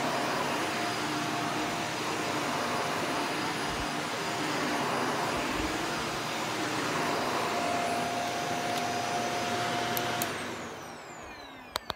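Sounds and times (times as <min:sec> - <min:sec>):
vacuum cleaner running on carpet: 0:00.0 - 0:11.9
motor winding down whine: 0:03.5 - 0:11.9
clicks: 0:08.7 - 0:09.0, 0:09.9 - 0:10.4, 0:11.2 - 0:11.9.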